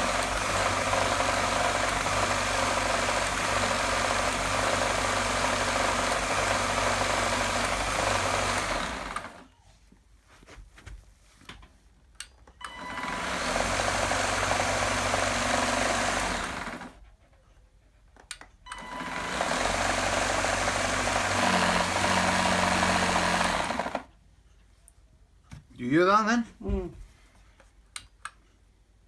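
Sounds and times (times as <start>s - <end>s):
cordless vacuum running roughly: 0.0s - 9.5s, 12.7s - 17.0s, 18.8s - 24.1s.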